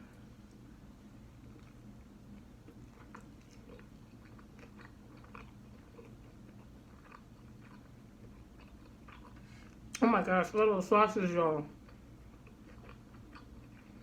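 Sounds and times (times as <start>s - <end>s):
chewing crunchy taco shell: 1.3s - 10.0s, 11.7s - 14.0s.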